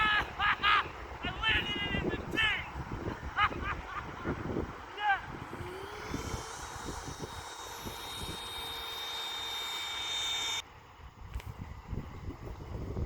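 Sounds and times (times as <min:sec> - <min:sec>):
wind buffeting microphone: 0:00.0 - 0:08.4
electric ducted-fan whine: 0:00.0 - 0:13.0.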